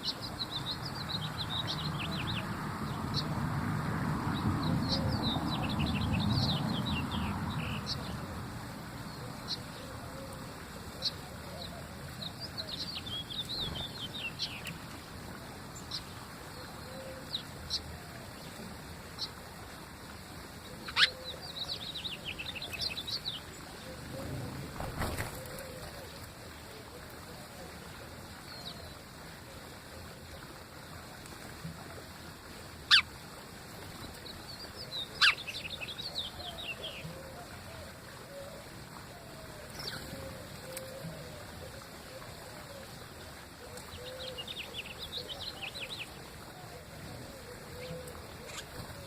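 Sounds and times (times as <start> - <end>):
outdoor background hiss: 0.0 - 49.0
birds chirping: 4.3 - 8.2, 34.0 - 37.3.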